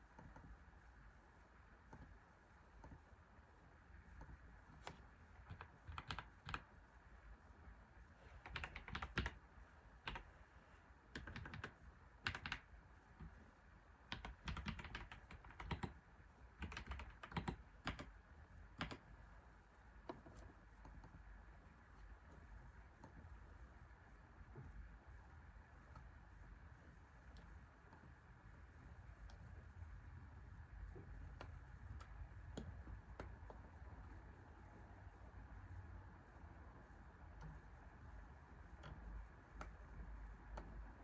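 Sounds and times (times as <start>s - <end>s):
computer keyboard typing: 4.2s - 6.8s, 8.3s - 9.4s, 10.0s - 10.4s, 11.1s - 13.4s, 14.1s - 19.2s, 20.0s - 21.4s.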